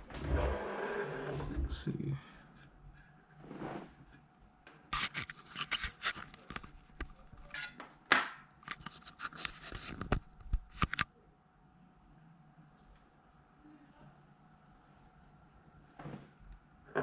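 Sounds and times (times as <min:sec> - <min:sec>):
scraping or rubbing: 0:00.1 - 0:01.8, 0:03.3 - 0:04.2, 0:05.0 - 0:06.5.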